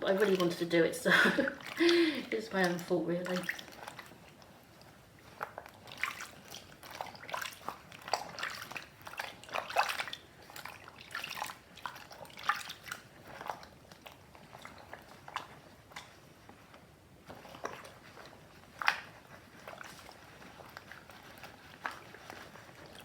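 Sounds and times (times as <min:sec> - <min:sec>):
water splashing in a bowl: 0:00.1 - 0:23.0
wet plush toy squelching: 0:00.1 - 0:23.0.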